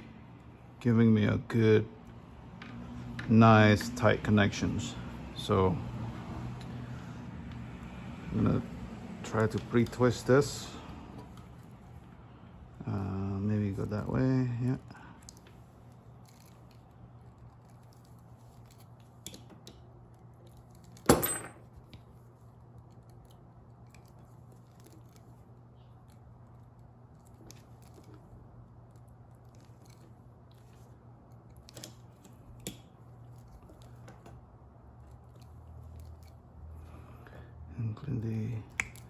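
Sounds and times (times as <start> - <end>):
steady low hum: 0.0 - 39.0
wire and tool clicks and scrapes: 9.2 - 12.3, 13.6 - 37.2.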